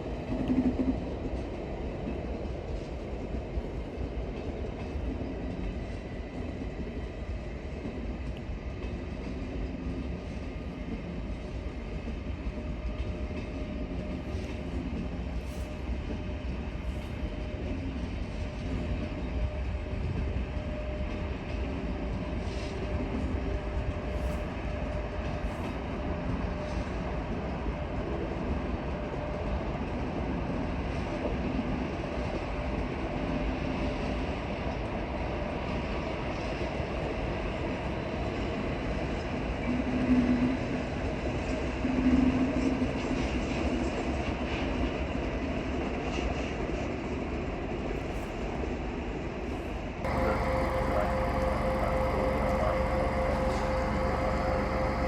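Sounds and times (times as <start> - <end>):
train rumbling on track: 0.0 - 55.0
short low tones: 50.1 - 55.0.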